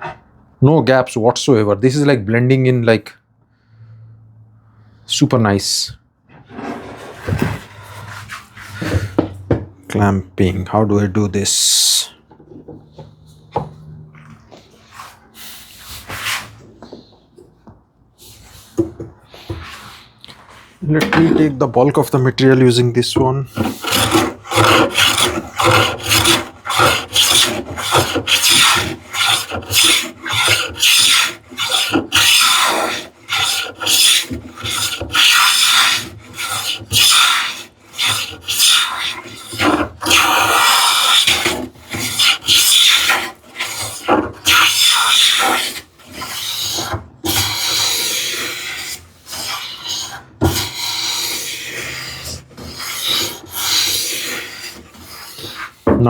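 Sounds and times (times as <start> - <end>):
hand plane strokes on wood: 6.5 - 9.4, 18.3 - 56.0.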